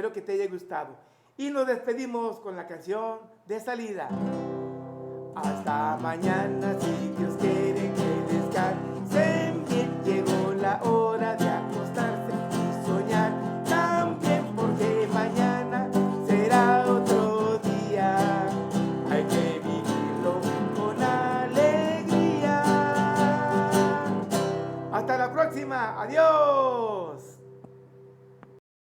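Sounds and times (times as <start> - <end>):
strummed acoustic guitar: 4.1 - 26.2
person singing: 5.4 - 27.4.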